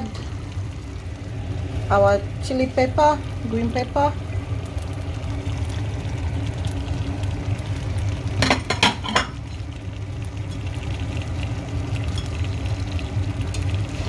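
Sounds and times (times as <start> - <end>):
steady low hum: 0.0 - 14.0
utensil clinking on pot: 8.4 - 9.4.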